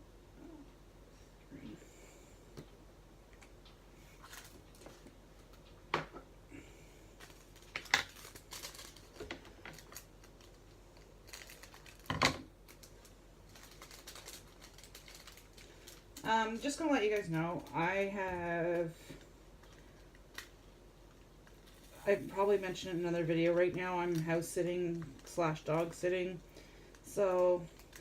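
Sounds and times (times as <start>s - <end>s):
plastic bags crinkling: 4.2s - 5.6s, 7.2s - 28.0s.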